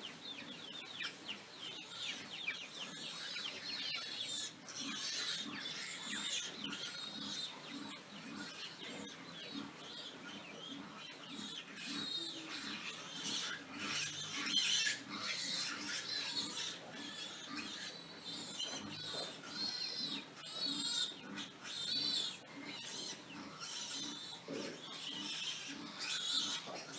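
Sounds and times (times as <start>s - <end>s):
pigs squealing: 1.7s - 26.9s
pig grunts: 4.0s - 9.8s, 10.4s - 26.9s.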